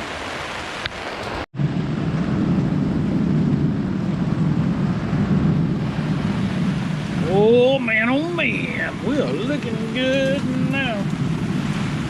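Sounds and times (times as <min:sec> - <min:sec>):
pouring rain: 0:00.0 - 0:12.0.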